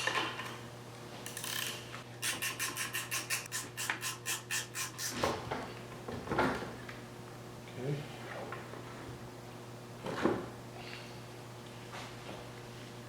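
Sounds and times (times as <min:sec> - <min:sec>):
ratchet wrench clicking: 0:01.3 - 0:05.2.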